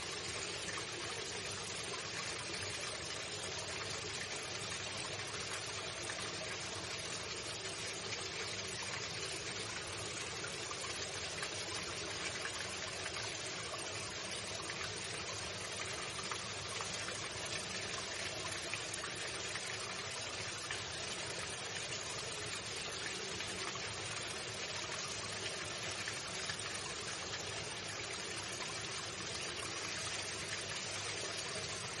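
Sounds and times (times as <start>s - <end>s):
running water rushing: 0.0s - 32.0s.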